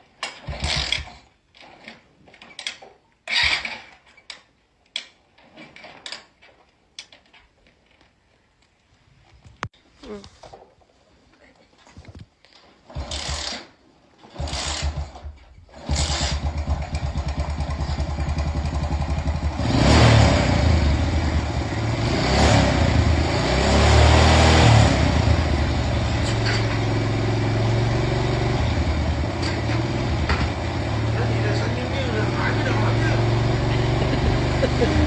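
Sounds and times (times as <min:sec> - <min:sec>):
motorcycle engine starting and revving: 0:00.0 - 0:04.1, 0:12.7 - 0:35.0.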